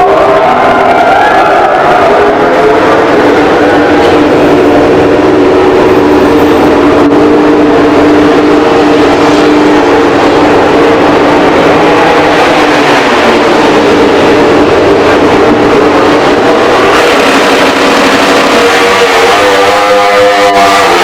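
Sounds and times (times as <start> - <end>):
race bike engine at high revs: 0.0 - 21.0.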